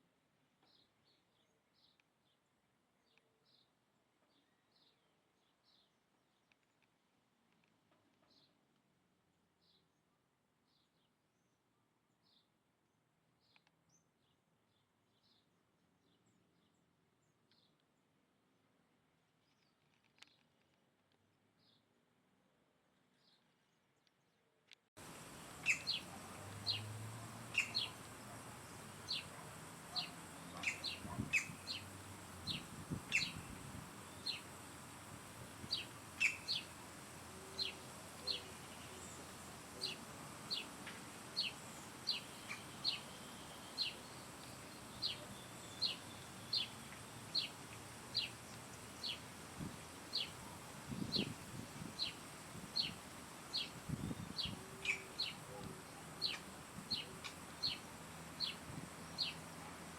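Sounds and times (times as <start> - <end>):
bird repeating high call: 25.6 - 26.9, 27.5 - 28.4, 29.0 - 31.9, 32.5 - 33.6, 35.7 - 36.8, 54.4 - 55.4.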